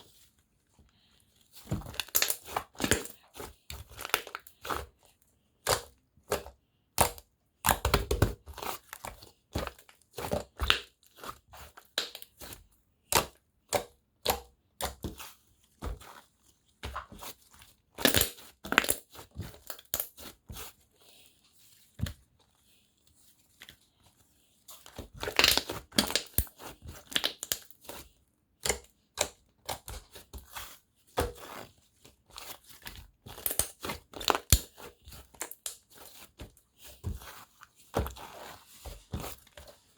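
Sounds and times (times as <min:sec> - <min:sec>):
slime squished by hands: 0:01.6 - 0:05.0, 0:24.8 - 0:39.7.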